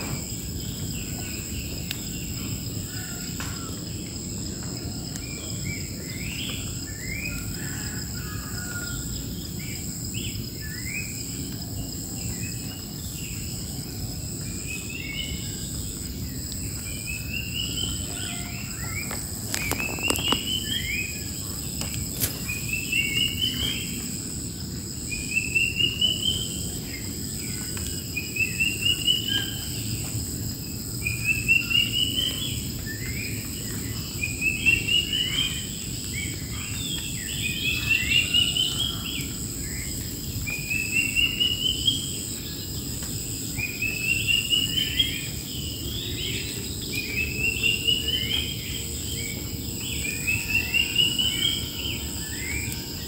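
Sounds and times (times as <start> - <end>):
wild birds singing: 0.0 - 53.0
high-pitched insect drone: 17.0 - 53.0.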